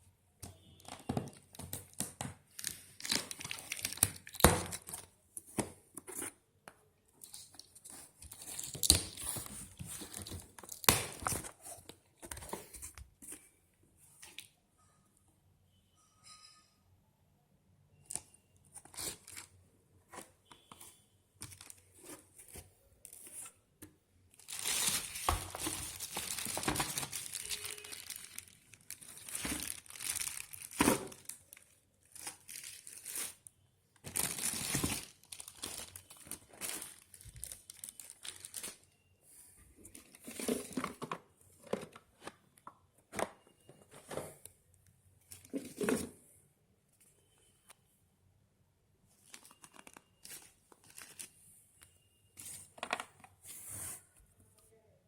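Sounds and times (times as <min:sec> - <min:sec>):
plastic wrapping crinkling and tearing: 0:01.7 - 0:05.1, 0:21.4 - 0:22.2, 0:24.3 - 0:33.5, 0:34.1 - 0:38.9, 0:49.2 - 0:51.4.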